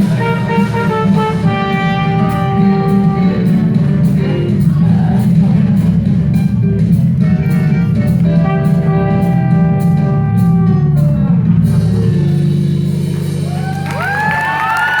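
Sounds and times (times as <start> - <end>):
trumpet playing: 0.0 - 4.6, 7.3 - 11.2
backing track with drums: 0.0 - 15.0
audience cheering and whooping: 13.3 - 15.0.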